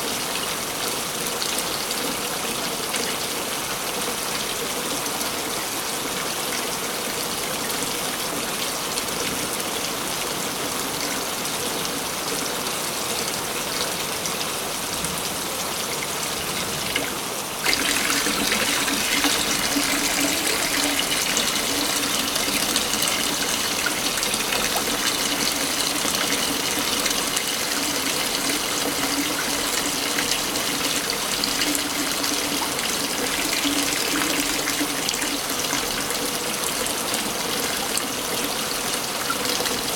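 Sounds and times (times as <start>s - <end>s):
waterfall rushing: 17.6s - 35.6s.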